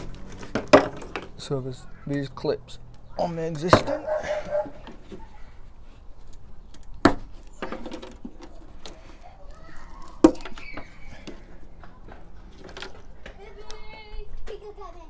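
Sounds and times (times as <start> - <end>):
clips knocking and clicking: 3.0 - 5.2, 9.8 - 13.8.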